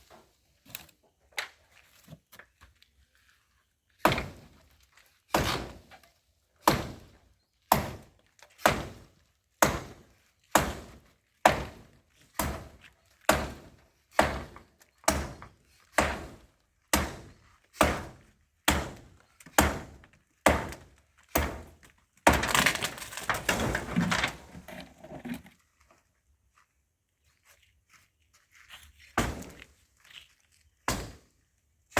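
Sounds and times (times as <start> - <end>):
structure crashing down: 22.3 - 24.7.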